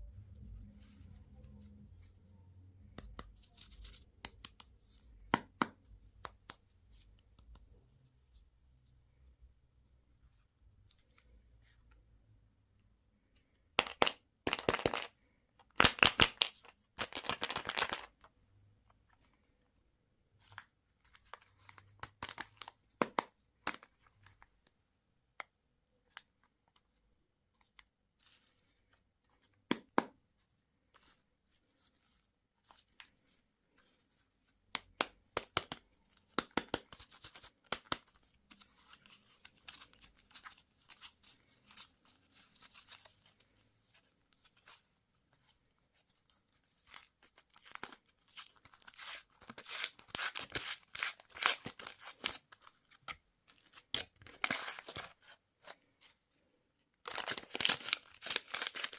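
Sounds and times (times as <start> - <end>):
plastic wrappers crinkling: 57.0 - 58.9
plastic wrappers ripping: 57.0 - 58.9.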